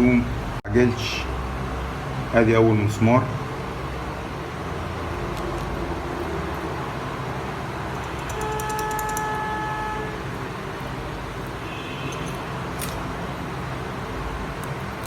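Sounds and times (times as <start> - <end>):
street traffic noise: 0.0 - 15.0
car horn: 8.1 - 10.7, 11.6 - 12.6.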